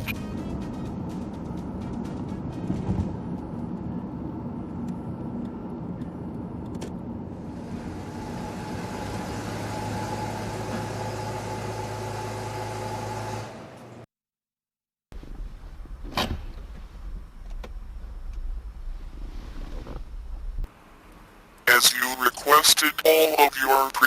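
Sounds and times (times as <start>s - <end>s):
car engine and road noise: 0.0s - 14.1s, 15.1s - 22.6s
steady engine hum: 0.2s - 14.1s.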